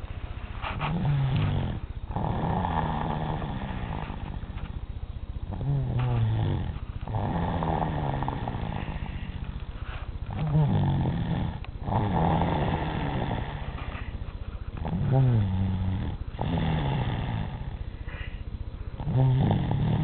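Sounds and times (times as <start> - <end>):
child snoring: 0.6 - 4.8, 5.5 - 18.4, 19.0 - 20.0.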